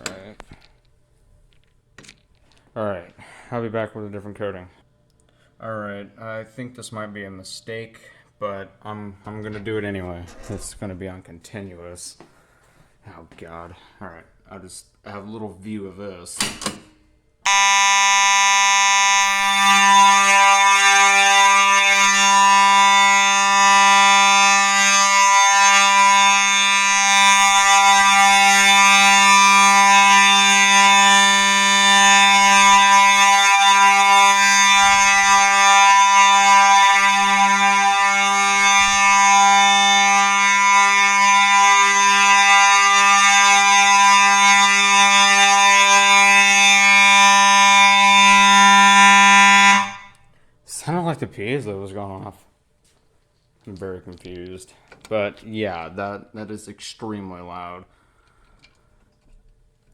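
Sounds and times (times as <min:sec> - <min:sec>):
fire alarm horn buzzing: 0:00.0 - 0:00.7, 0:17.4 - 0:50.4.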